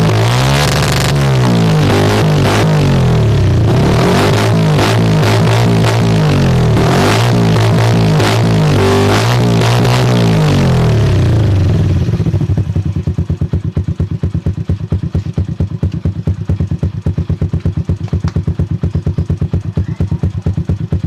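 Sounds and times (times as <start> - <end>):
motorcycle engine idling: 10.3 - 21.0.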